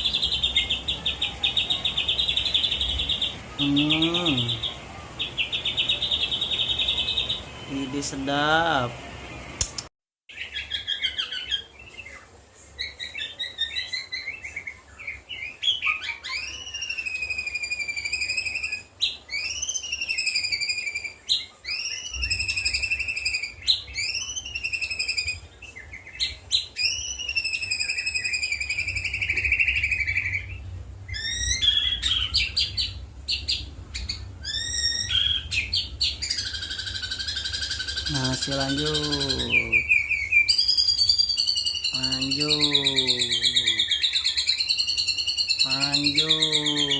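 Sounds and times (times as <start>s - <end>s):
songbird singing whistled phrases: 10.3s - 46.9s.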